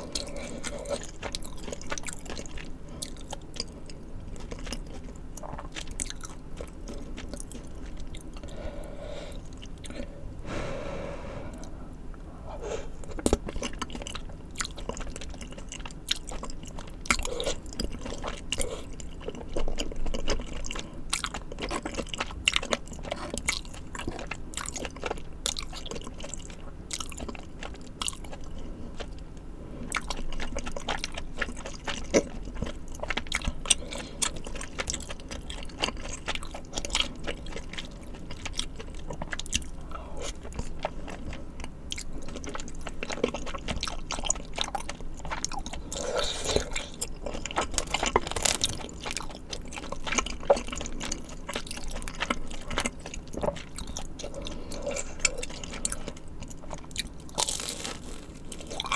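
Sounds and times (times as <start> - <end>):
wet chewing and biting: 0.0 - 8.7, 29.9 - 58.9
food crunching: 0.0 - 10.1, 12.9 - 29.3, 29.9 - 58.9.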